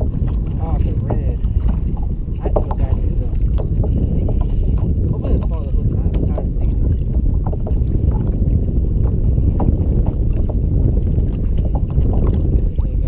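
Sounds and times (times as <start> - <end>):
wind buffeting microphone: 0.0 - 13.0.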